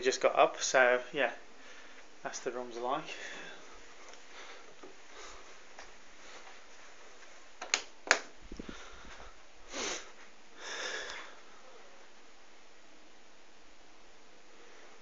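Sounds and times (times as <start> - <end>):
person sniffing: 9.7 - 11.4.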